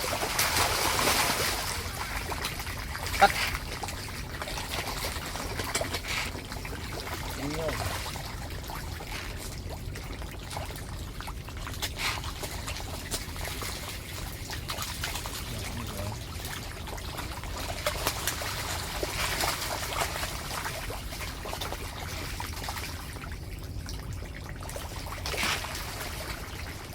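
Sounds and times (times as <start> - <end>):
water trickling and splashing: 0.0 - 26.9.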